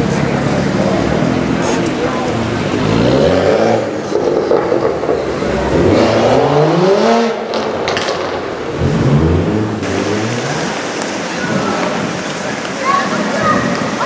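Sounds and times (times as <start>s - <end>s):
car engine revving: 0.0s - 13.9s
exhaust crackles and pops: 0.0s - 14.0s.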